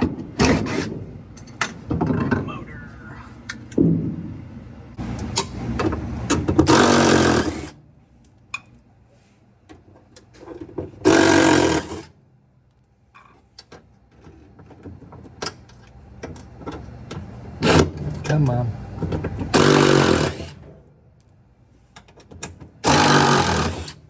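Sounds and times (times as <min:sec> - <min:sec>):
cordless power driver running: 0:06.6 - 0:07.8, 0:11.1 - 0:12.0, 0:19.5 - 0:20.6, 0:22.8 - 0:24.0
parts clicking and knocking: 0:21.9 - 0:24.0.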